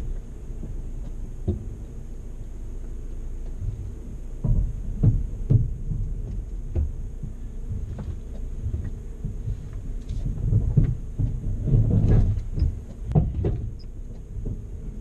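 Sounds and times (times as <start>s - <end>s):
diesel engine drone: 0.0s - 15.0s
dull thumps of truck jolting: 3.7s - 15.0s.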